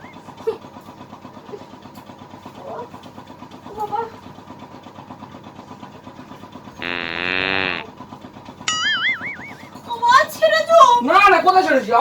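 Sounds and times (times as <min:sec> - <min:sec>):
low buzzing fart sound: 0:06.7 - 0:08.0
short high wavering sound: 0:08.7 - 0:09.8.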